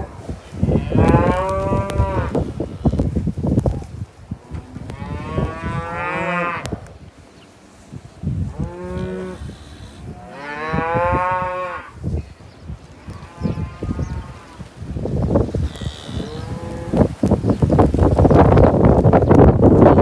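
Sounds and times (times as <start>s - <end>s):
cattle mooing: 0.7s - 3.0s, 4.6s - 6.7s, 8.6s - 11.9s, 15.6s - 17.0s.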